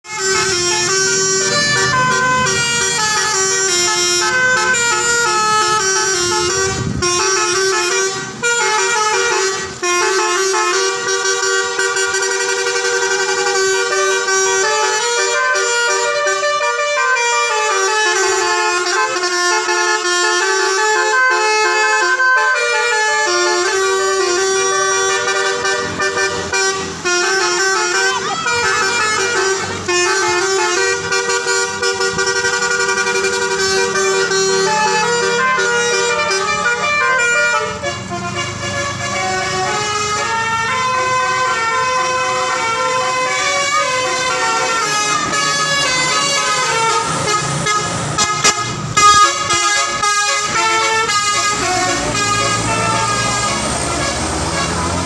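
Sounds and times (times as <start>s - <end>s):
bus horn playing a melody: 0.0s - 55.0s.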